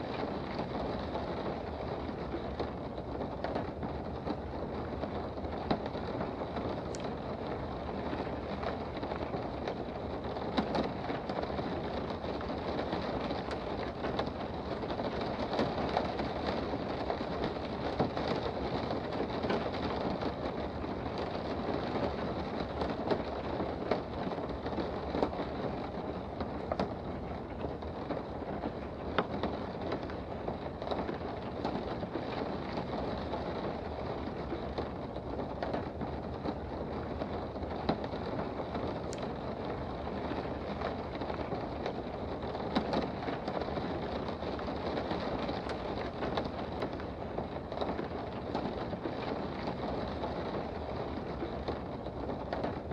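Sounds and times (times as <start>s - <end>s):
raindrops ticking: 0.0s - 52.9s
steady rain: 0.0s - 52.9s.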